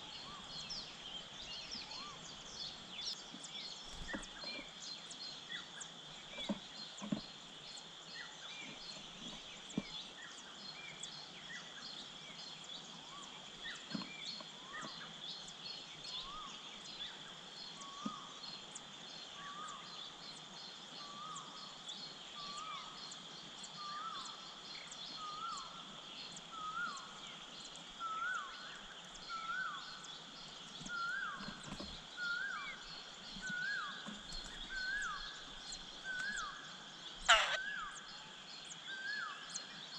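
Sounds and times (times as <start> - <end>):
high insect drone: 0.0 - 39.9
bird calling: 37.2 - 38.1.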